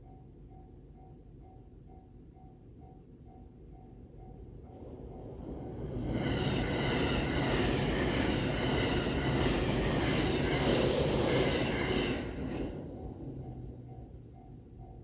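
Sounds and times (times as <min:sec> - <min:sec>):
train wheels rushing on rails: 0:04.3 - 0:15.0.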